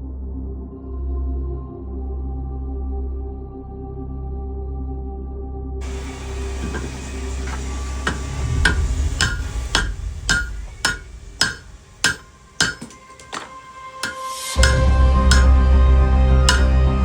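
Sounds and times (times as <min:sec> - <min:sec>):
hammer striking steel on anvil: 0:05.8 - 0:17.0.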